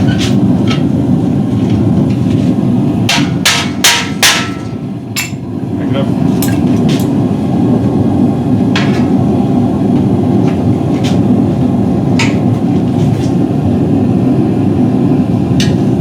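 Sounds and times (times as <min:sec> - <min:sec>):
low roar of shop noise: 0:00.0 - 0:16.0
hammer striking steel: 0:03.1 - 0:05.4.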